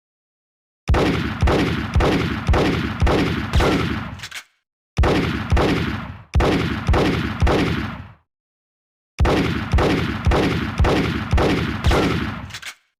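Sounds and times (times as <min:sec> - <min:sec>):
revolver gunshots with echo: 0:00.9 - 0:04.2, 0:05.0 - 0:08.2, 0:09.2 - 0:12.6.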